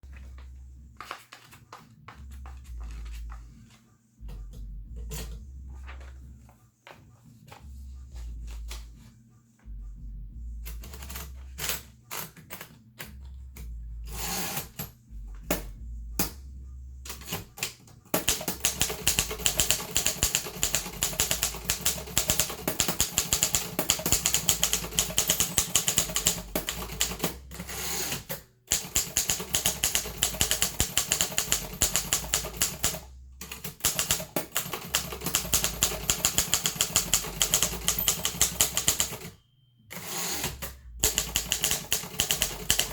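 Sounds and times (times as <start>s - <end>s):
typewriter typing: 17.1s - 42.9s.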